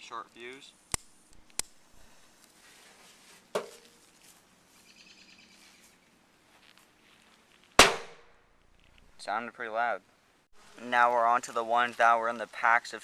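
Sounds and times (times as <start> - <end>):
firecracker bang: 7.8 - 8.4.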